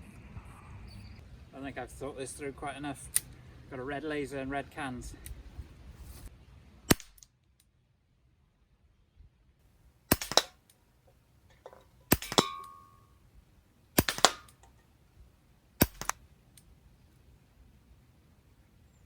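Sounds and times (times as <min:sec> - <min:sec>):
air pistol shots: 0:06.9 - 0:07.2, 0:10.1 - 0:10.6, 0:11.5 - 0:13.0, 0:14.0 - 0:14.7, 0:15.8 - 0:16.2
short metallic ring: 0:11.5 - 0:13.2.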